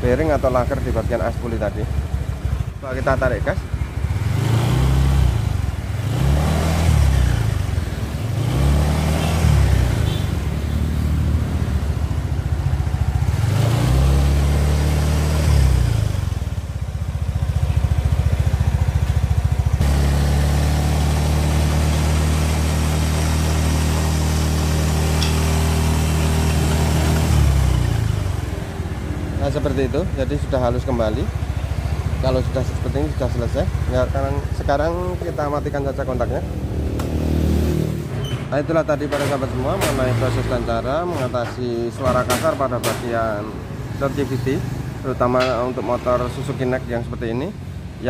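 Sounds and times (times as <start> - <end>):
scooter engine revving: 0.0 - 48.0.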